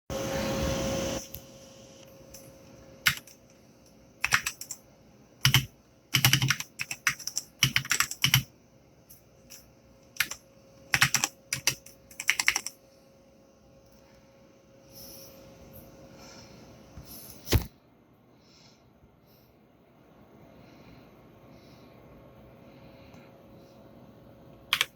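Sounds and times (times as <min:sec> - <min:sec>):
faint steady hum: 0:00.1 - 0:24.9
mechanical keyboard typing: 0:02.3 - 0:03.6, 0:04.2 - 0:04.8, 0:05.4 - 0:08.5, 0:09.5 - 0:12.8.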